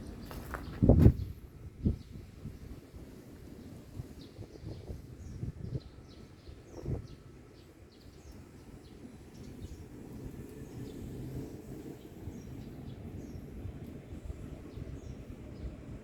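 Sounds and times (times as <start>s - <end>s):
small birds chirping: 4.1s - 16.0s.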